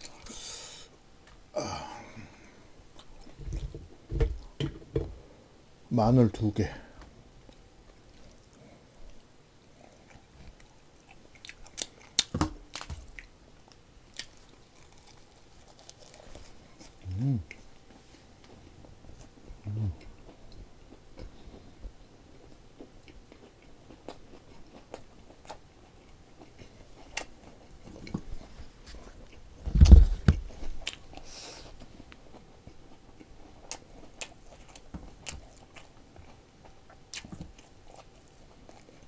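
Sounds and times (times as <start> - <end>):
chewing and biting lettuce: 8.1 - 13.3, 14.0 - 17.7, 22.3 - 28.1, 30.8 - 39.0.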